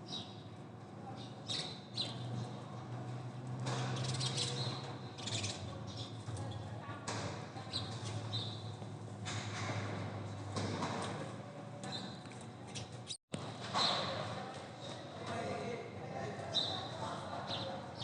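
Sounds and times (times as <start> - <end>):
small birds chirping and squawking: 1.1 - 2.6, 3.9 - 6.8, 7.6 - 8.7.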